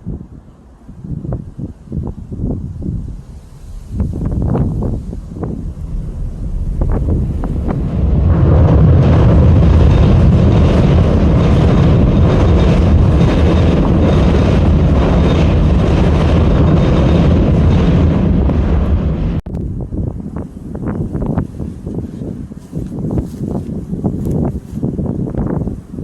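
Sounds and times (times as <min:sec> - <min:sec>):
wind buffeting microphone: 0:00.0 - 0:26.0
rustling leaves: 0:00.3 - 0:12.1, 0:19.5 - 0:26.0.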